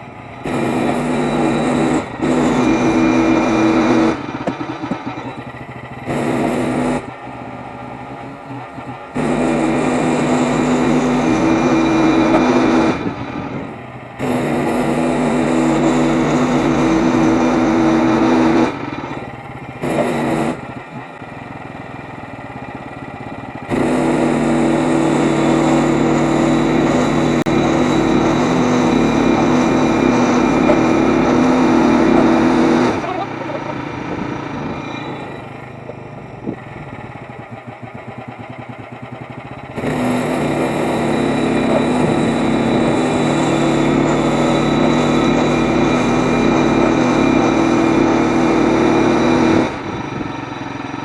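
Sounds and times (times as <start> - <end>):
band saw cutting log: 0.0 - 7.2, 8.4 - 21.0, 23.6 - 50.8
small gasoline engine running: 0.0 - 51.0.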